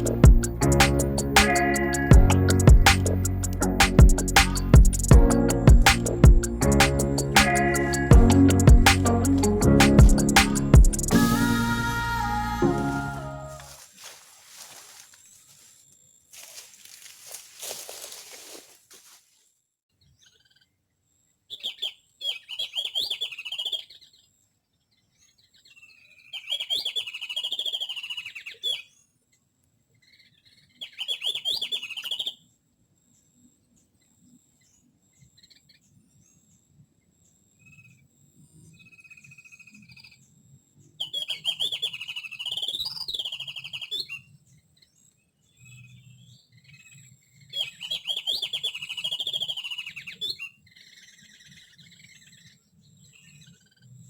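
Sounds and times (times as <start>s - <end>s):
songbirds chattering chirps: 13.7s - 19.2s, 33.1s - 54.0s.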